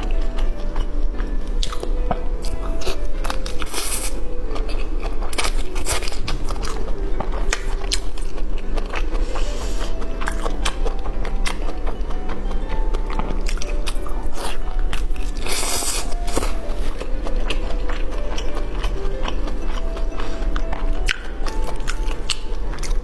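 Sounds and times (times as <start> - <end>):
faint music: 0.0 - 23.0
person chewing crunchy food: 0.0 - 23.0
wet mouth sounds: 1.6 - 6.8, 13.0 - 23.0.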